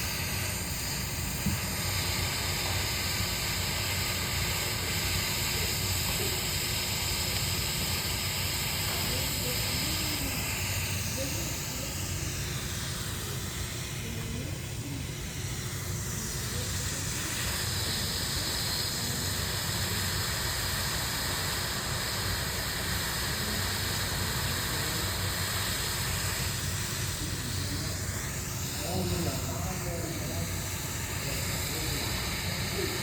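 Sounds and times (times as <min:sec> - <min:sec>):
hot-gas torch hissing: 0:00.0 - 0:33.0.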